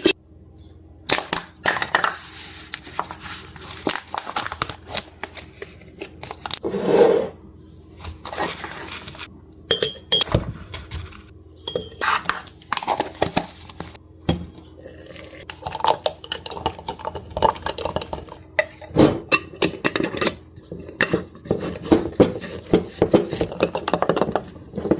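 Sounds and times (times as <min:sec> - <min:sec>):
dishes and utensils clinking: 0:09.7 - 0:11.0, 0:11.6 - 0:12.4.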